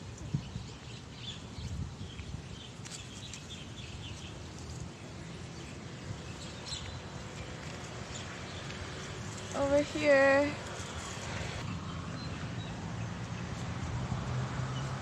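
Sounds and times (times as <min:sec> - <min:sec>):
wind on microphone: 0:00.0 - 0:09.5.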